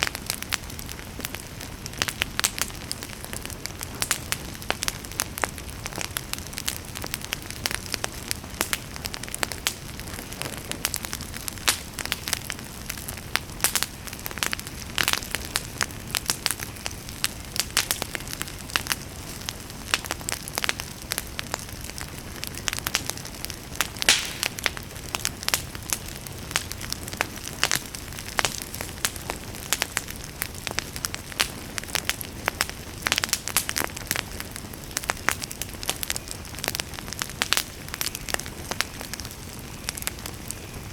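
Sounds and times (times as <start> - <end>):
low fire hiss: 0.0 - 40.9
wood fire crackling and popping: 0.0 - 40.9.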